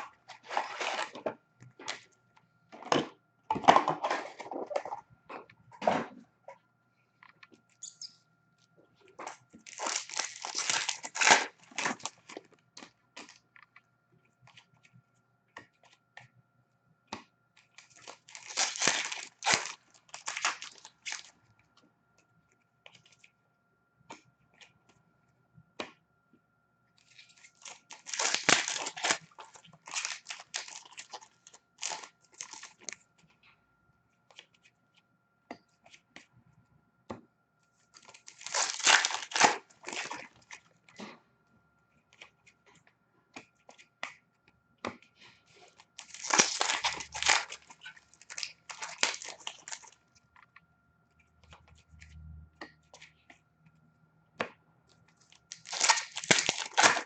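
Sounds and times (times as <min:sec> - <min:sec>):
card wrappers tearing and crinkling: 0:00.0 - 0:01.2, 0:09.6 - 0:12.4, 0:17.8 - 0:21.3, 0:27.1 - 0:33.0, 0:38.0 - 0:40.6, 0:46.0 - 0:50.0, 0:55.3 - 0:57.0.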